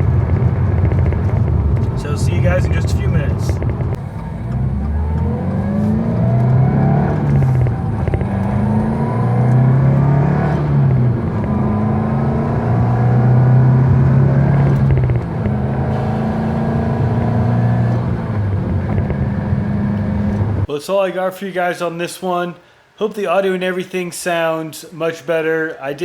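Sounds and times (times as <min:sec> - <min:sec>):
car engine accelerating: 0:00.0 - 0:20.7.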